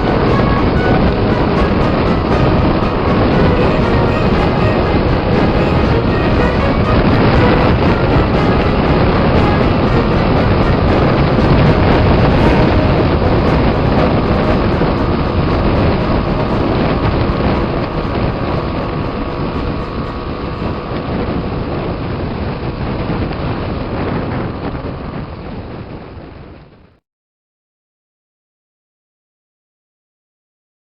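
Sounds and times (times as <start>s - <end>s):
wind rushing over microphone: 0.0s - 27.0s.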